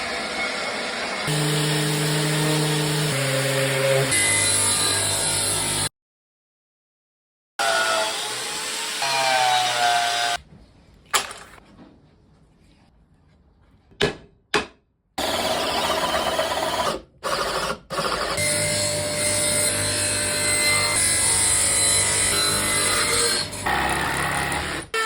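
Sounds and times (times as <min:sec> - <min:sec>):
power tool working wood: 0:00.0 - 0:05.9, 0:15.2 - 0:25.0.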